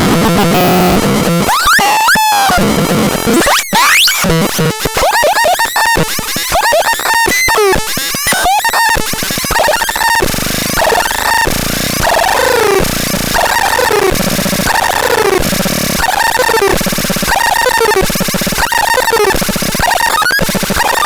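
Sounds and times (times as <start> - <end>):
glitchy electronic noise: 0.0 - 21.0.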